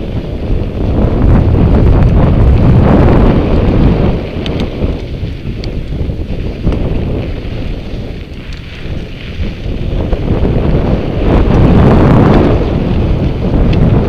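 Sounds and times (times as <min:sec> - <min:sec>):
mountain bike rattling: 0:00.0 - 0:14.0
wind buffeting microphone: 0:00.0 - 0:14.0
stones and gravel clicking: 0:03.3 - 0:10.9.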